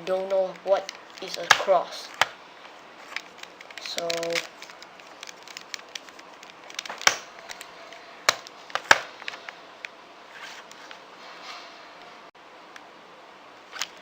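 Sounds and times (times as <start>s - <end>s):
puzzle cube clicking as turned: 3.1s - 7.7s.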